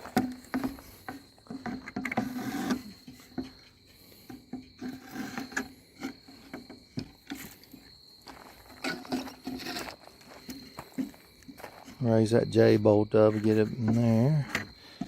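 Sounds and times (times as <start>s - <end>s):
wooden board knocks and scrapes: 0.0s - 7.7s
high insect trill: 0.0s - 15.0s.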